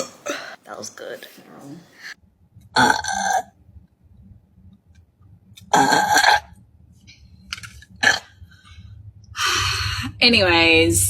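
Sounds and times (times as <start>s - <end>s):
young woman burping: 2.8s - 3.5s, 5.7s - 6.5s.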